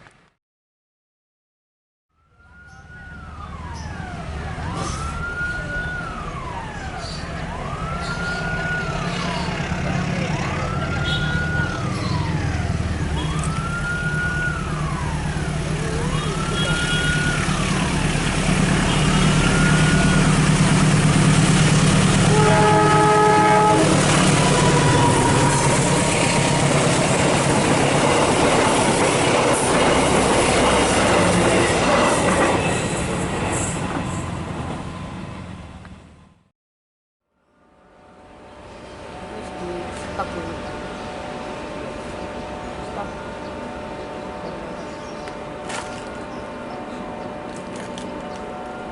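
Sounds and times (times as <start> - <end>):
wailing warning siren: 2.1 - 36.2, 37.7 - 48.9
train rumbling past: 2.5 - 36.4, 37.7 - 48.9
train horn blast: 16.1 - 26.7.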